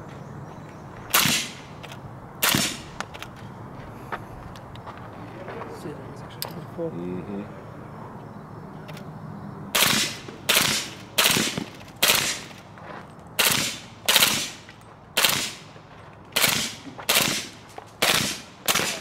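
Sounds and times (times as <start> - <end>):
suppressed rifle shots: 1.1 - 3.3, 9.8 - 12.6, 13.4 - 14.6, 15.2 - 15.7, 16.4 - 19.0.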